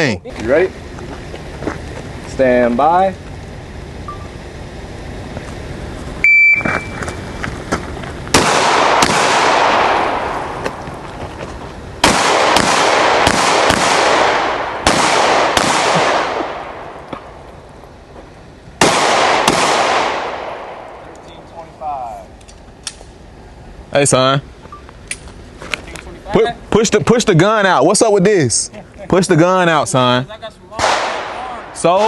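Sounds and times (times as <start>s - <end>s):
shot timer beep: 6.2s - 7.0s
pistol shots echoing: 8.3s - 10.6s, 12.0s - 17.4s, 18.8s - 21.0s, 30.8s - 32.0s.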